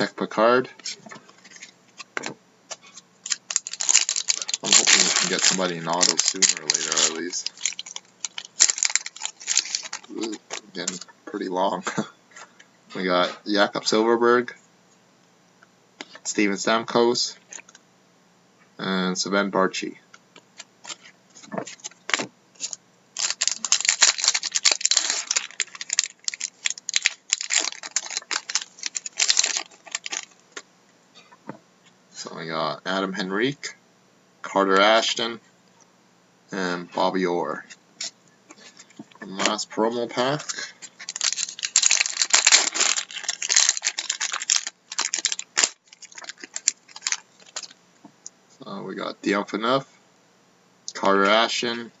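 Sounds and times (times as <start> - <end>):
wrapper crinkling and tearing: 2.8 - 11.1, 20.8 - 30.6, 40.4 - 47.8.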